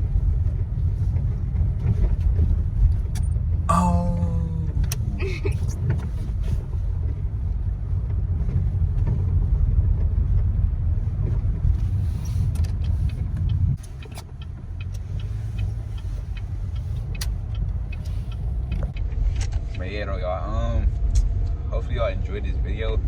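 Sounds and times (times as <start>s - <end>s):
car engine and road noise: 0.0s - 23.0s.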